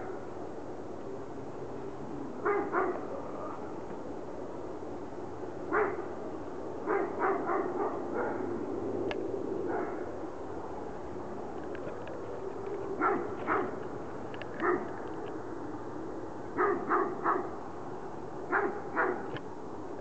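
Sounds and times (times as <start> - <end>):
low drone: 0.0 - 20.0
dog barking: 2.4 - 3.6, 5.7 - 6.1, 6.9 - 8.5, 9.7 - 10.1, 13.0 - 13.8, 14.6 - 14.9, 16.6 - 17.6, 18.5 - 19.3.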